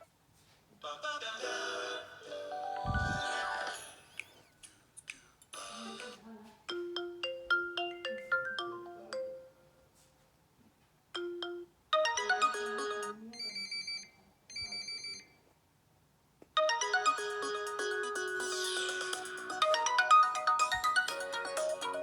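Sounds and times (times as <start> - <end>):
bright ringtone melody: 2.3 - 4.5, 5.8 - 9.7, 11.2 - 15.2, 16.6 - 22.0
falling chime-like ringtone: 2.4 - 4.5, 6.7 - 9.6, 11.2 - 14.0, 16.6 - 22.0.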